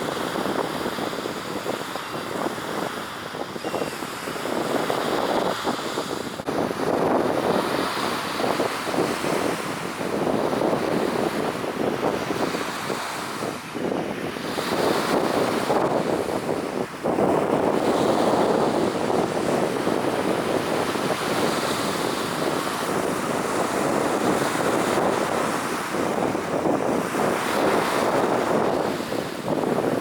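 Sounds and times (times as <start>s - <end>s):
sea waves washing: 0.0s - 30.0s
wind buffeting microphone: 0.0s - 30.0s.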